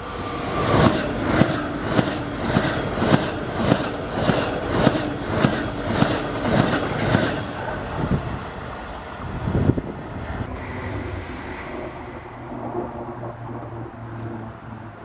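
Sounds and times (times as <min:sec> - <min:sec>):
train running hum: 0:00.0 - 0:15.0
train wheels clacking: 0:00.7 - 0:08.3.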